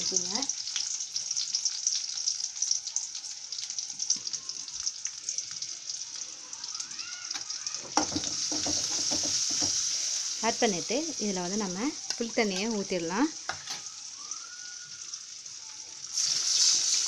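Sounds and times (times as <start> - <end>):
food sizzling in oil: 0.0 - 17.0
knock: 8.0 - 9.8.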